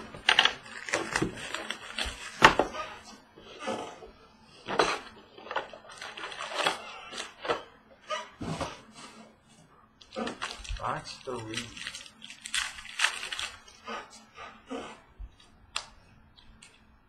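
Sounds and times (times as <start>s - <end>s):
cards clicking and rustling: 0.0s - 3.0s, 4.8s - 7.7s, 10.0s - 14.2s, 15.4s - 16.9s.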